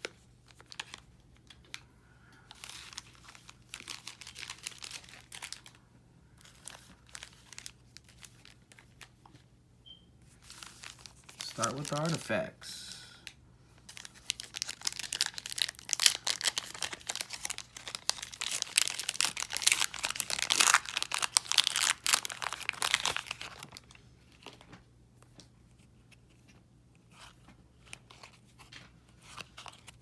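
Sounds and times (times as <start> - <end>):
wrapper tearing and crinkling: 2.5 - 5.8, 6.4 - 9.0, 10.4 - 12.2, 13.9 - 24.6.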